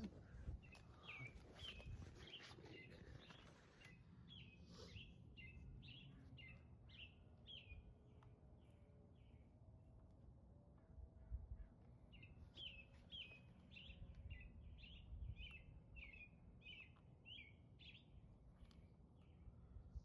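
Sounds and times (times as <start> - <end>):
bird chirping: 0.0 - 7.8, 11.6 - 19.5.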